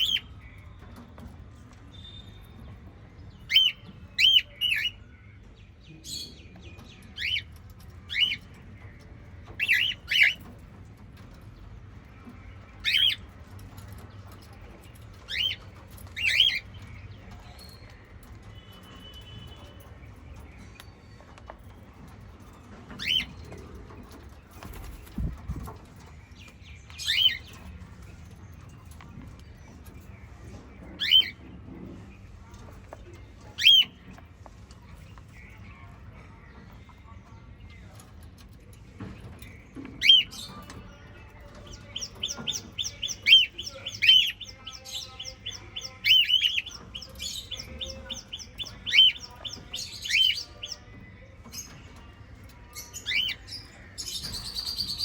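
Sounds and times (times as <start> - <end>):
parrots chirping: 9.5 - 10.7, 22.9 - 23.5, 31.0 - 31.4, 41.8 - 50.6.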